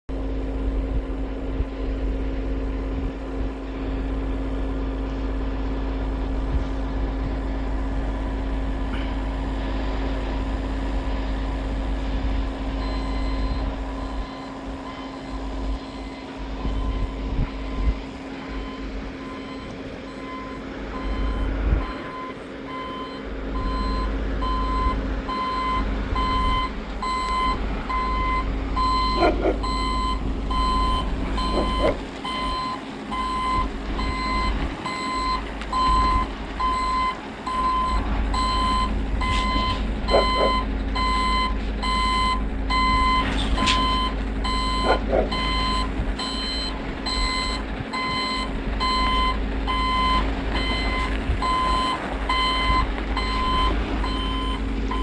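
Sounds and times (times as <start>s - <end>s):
diesel engine running: 0.0s - 55.0s
reversing alarm beeping: 12.5s - 55.0s.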